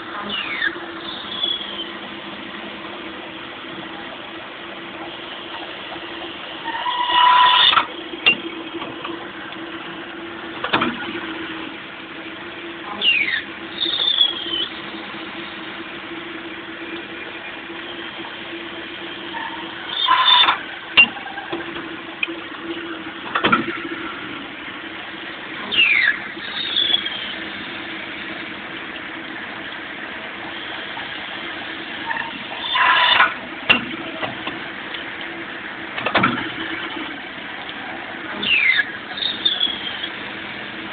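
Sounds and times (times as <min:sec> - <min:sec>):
high squeals from cutting: 0:00.2 - 0:01.9, 0:06.6 - 0:07.9, 0:13.0 - 0:14.8, 0:19.3 - 0:20.6, 0:25.7 - 0:27.3, 0:32.0 - 0:33.3, 0:38.4 - 0:40.1.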